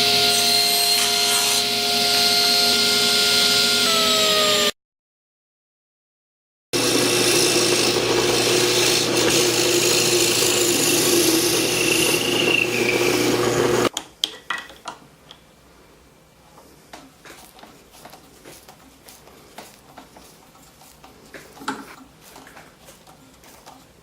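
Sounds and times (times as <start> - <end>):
power tool working wood: 0.0 - 4.8, 6.8 - 13.9.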